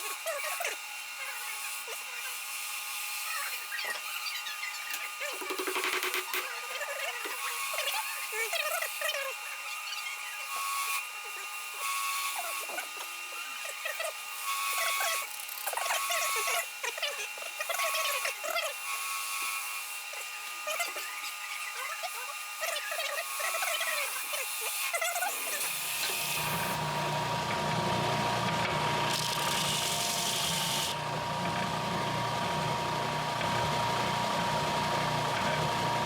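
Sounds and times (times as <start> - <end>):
wood lathe whine: 0.0 - 36.0
tool rubbing spinning wood: 24.5 - 36.0.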